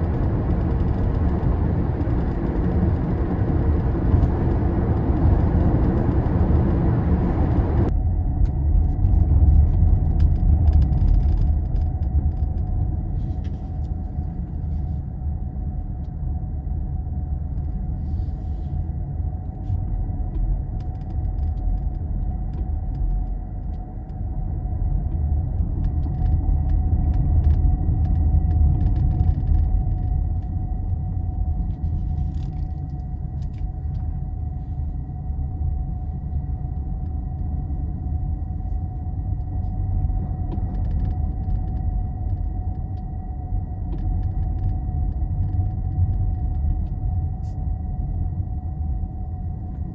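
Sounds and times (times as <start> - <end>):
road and tyre rumble: 0.0 - 15.1
faint steady whine: 0.0 - 49.9.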